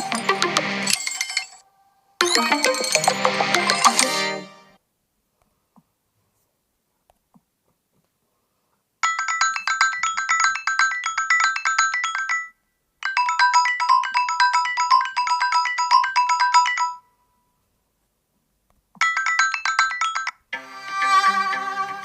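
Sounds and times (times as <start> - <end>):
electronic ringtone notes: 0.0 - 1.6, 2.2 - 4.8.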